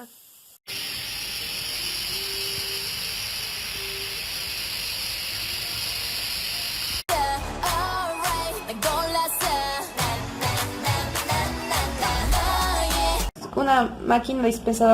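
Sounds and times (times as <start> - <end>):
steady steam hiss: 0.0 - 7.0.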